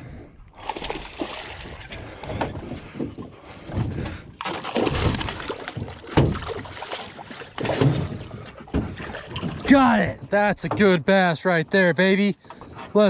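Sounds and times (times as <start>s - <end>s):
water splashing: 0.6s - 3.5s, 4.4s - 10.3s
knocks against boat: 5.0s - 6.7s, 7.6s - 11.0s.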